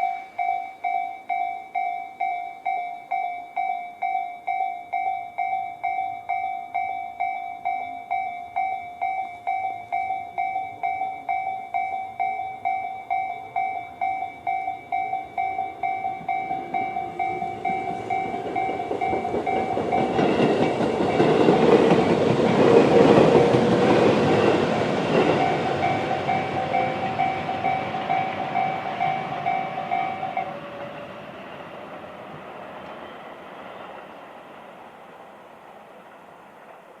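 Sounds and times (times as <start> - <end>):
level-crossing electronic bell dinging: 0.0 - 22.0, 24.1 - 30.9
train wheels clacking over rails: 12.6 - 37.0.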